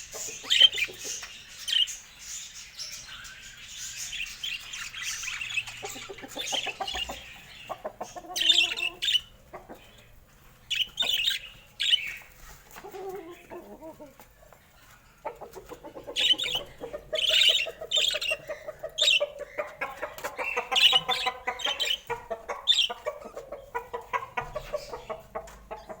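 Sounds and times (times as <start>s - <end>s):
budgies chirping: 0.0s - 26.0s.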